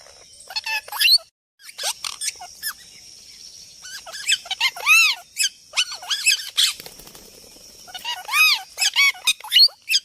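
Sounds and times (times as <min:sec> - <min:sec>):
parrot chirping and squawking: 0:00.5 - 0:02.8, 0:03.8 - 0:06.8, 0:07.9 - 0:10.0.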